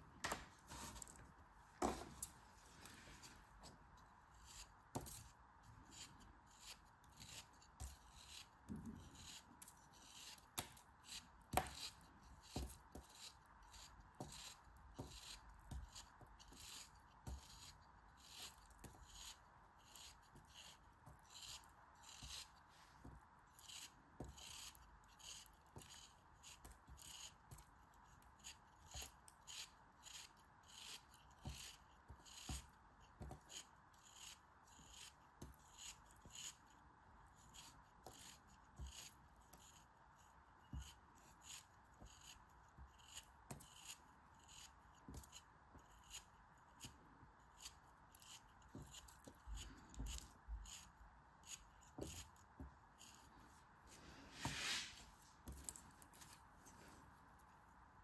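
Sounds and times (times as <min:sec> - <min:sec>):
crisp cutting and scraping strokes: 0:01.8 - 0:36.7, 0:37.4 - 0:39.9, 0:40.7 - 0:57.5.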